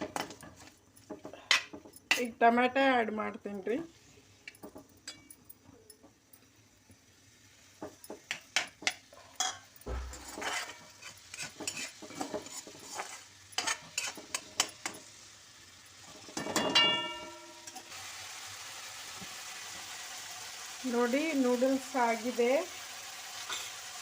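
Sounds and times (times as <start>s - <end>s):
spatula scraping vegetables in pan: 0.0s - 2.3s, 7.7s - 15.3s, 23.4s - 23.9s
frying sizzle: 0.0s - 24.0s
metal ringing: 16.6s - 17.6s.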